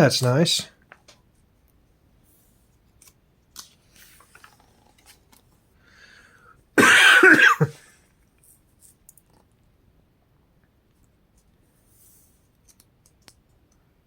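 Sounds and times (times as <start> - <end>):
book pages rustling: 2.2 - 5.6
person coughing: 6.8 - 7.9.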